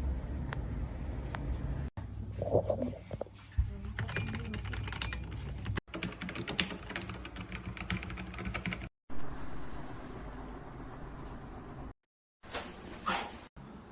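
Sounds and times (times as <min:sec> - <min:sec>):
mechanical keyboard typing: 0:04.0 - 0:08.9.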